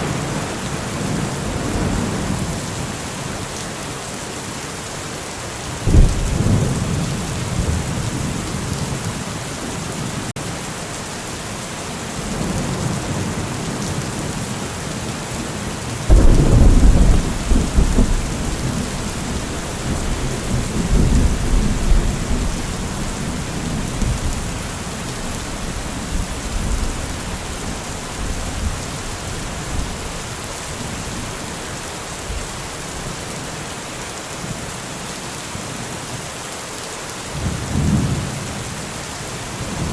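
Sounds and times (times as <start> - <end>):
heavy rain hissing: 0.0 - 39.9
thunder rumbling: 5.8 - 9.2, 16.1 - 30.2.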